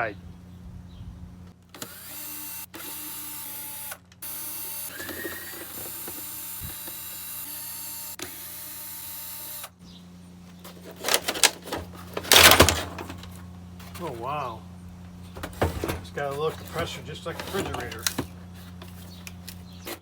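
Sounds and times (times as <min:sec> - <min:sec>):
power drill running: 0:01.7 - 0:09.8
parts knocking and clattering: 0:10.6 - 0:14.3, 0:15.0 - 0:20.0.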